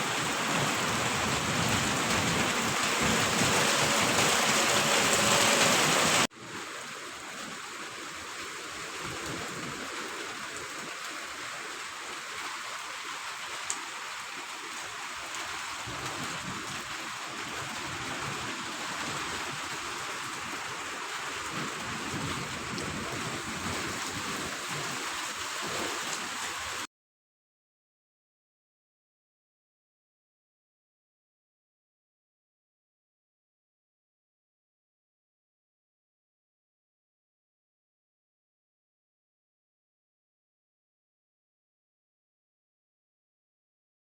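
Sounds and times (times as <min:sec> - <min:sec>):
rain and hail falling: 0:00.0 - 0:26.9.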